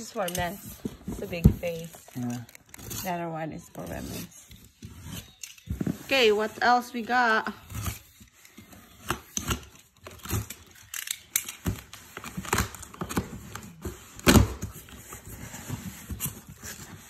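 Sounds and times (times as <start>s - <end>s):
packaging rustling: 0.0s - 6.6s.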